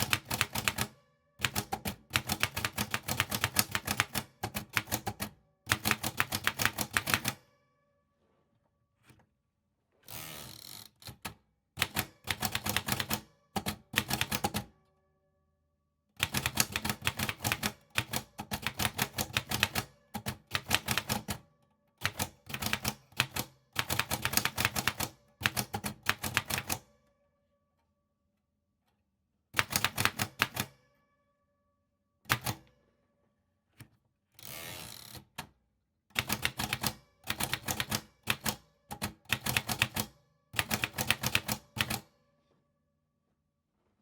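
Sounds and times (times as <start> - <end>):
typewriter keys clacking: 0.0 - 7.4, 16.2 - 21.4, 36.2 - 42.0.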